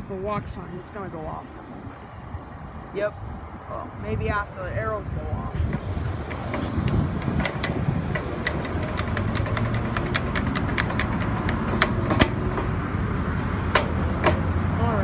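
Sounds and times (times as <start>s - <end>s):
vehicle engines idling: 0.0s - 15.0s
sharp ticking clicks: 6.2s - 12.7s.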